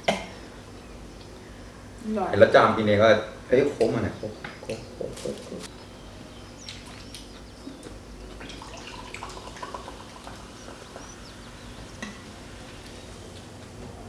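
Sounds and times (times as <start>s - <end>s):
low room hum: 0.0s - 14.0s
eating mouth noises: 3.8s - 5.7s.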